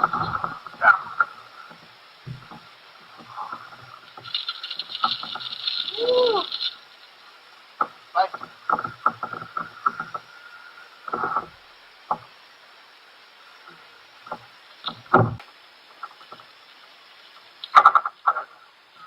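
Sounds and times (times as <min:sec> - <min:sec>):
muffled knocks and thumps in kayak: 0:00.0 - 0:05.9, 0:07.8 - 0:10.4, 0:11.0 - 0:12.4, 0:13.8 - 0:15.4.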